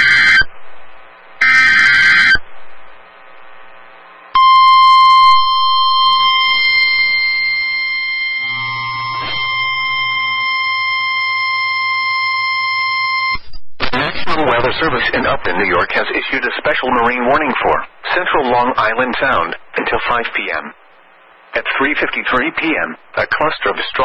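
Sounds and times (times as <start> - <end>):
steady attention tone: 0.0 - 22.1
faint program audio: 0.0 - 24.0.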